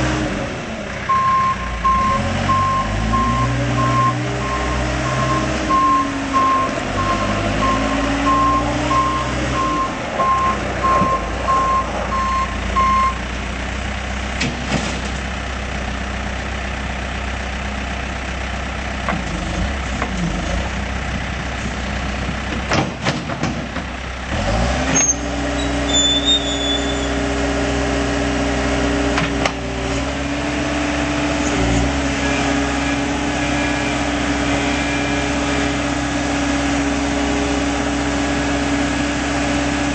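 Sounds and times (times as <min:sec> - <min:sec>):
diesel engine running under load: 0:00.0 - 0:39.9
reverse alarm beeping: 0:01.1 - 0:13.2.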